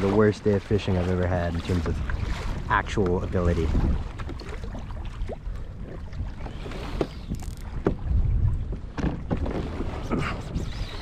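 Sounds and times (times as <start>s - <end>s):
water moving around kayak: 0.0s - 11.0s
wind rumbling on microphone: 0.0s - 11.0s
light knocks on kayak: 7.8s - 8.0s.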